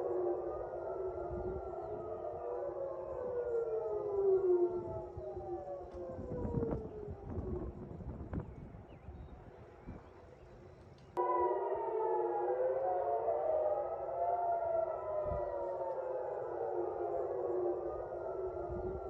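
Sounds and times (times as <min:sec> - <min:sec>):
air-raid sirens wailing: 0:00.0 - 0:08.8, 0:11.2 - 0:19.0.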